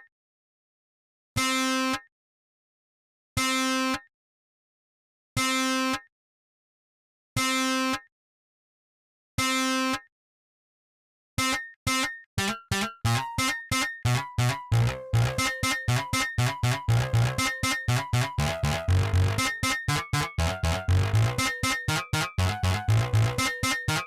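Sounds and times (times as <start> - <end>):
buzzy synthesized tone: 14.1 - 24.0
stuttering electronic notes: 14.1 - 24.0.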